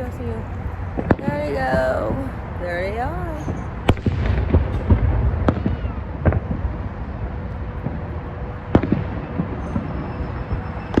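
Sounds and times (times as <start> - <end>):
fireworks rumbling explosions: 0.9 - 11.0
fireworks bangs: 3.4 - 6.8, 7.8 - 11.0.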